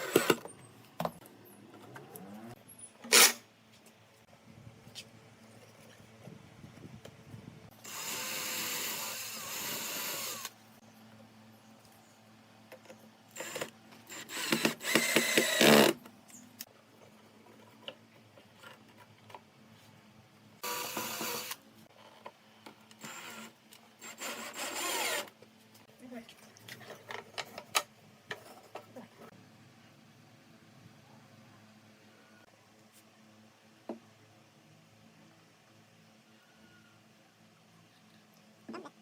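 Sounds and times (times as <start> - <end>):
power tool working wood: 13.4 - 16.0, 20.6 - 21.6, 23.0 - 25.3.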